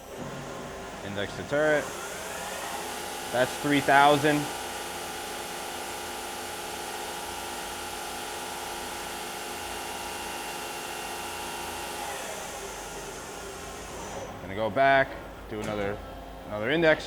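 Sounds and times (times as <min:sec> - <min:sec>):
lathe spindle whining: 0:00.0 - 0:14.4.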